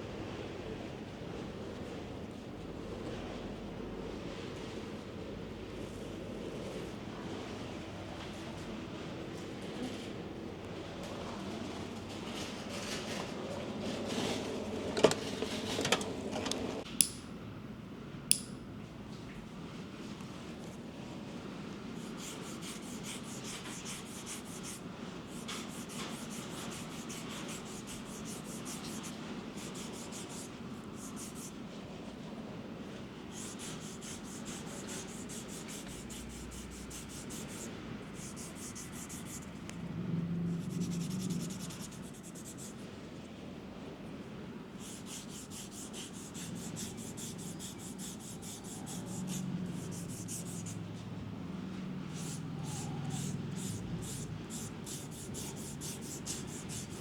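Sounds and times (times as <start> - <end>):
grooming tool scraping: 22.0 - 31.6, 33.3 - 39.8, 40.5 - 42.9, 44.8 - 50.8, 52.1 - 57.0.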